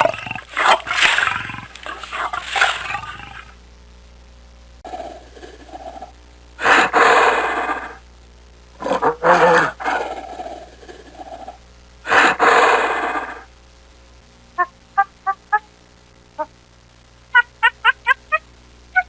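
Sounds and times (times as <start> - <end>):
large animal calling harshly: 0.0 - 3.5.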